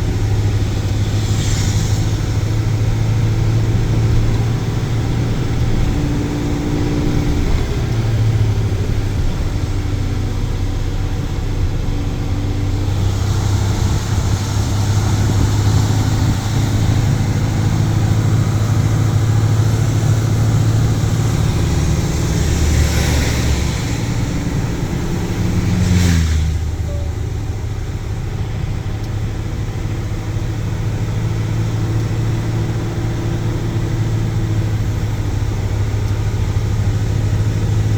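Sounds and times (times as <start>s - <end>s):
car engine running: 0.0s - 37.9s
road and tyre noise: 0.0s - 37.9s
whoosh passing: 19.3s - 27.0s.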